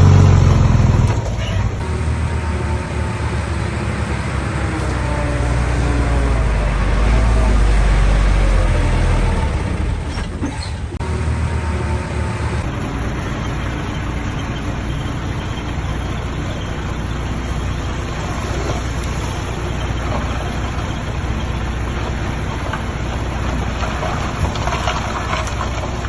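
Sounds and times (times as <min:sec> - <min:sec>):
heavy diesel engine running: 0:00.0 - 0:26.0.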